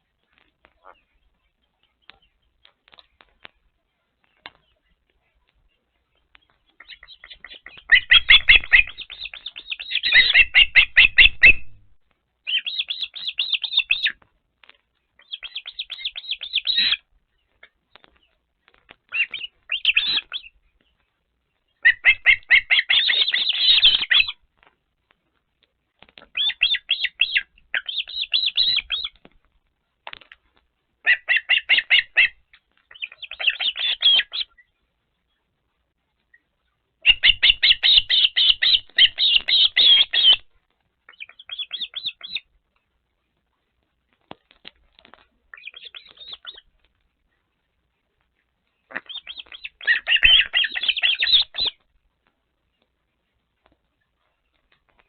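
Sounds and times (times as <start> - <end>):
ospreys chirping: 6.2 - 11.8, 19.1 - 20.6, 26.3 - 29.2, 37.0 - 40.4, 41.1 - 42.4, 45.5 - 46.7, 48.9 - 51.8.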